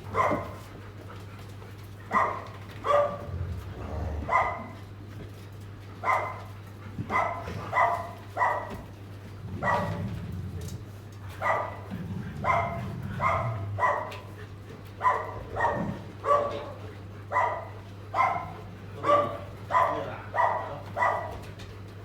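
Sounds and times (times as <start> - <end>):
dog barking: 0.1 - 0.6, 2.1 - 3.3, 4.2 - 4.8, 6.0 - 6.5, 7.1 - 8.8, 9.6 - 10.0, 11.4 - 11.8, 12.4 - 14.3, 15.0 - 21.4.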